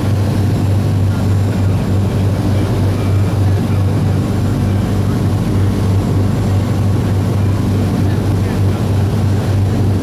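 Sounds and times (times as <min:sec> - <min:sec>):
constant rushing noise: 0:00.0 - 0:10.0
ship engine humming: 0:00.0 - 0:10.0.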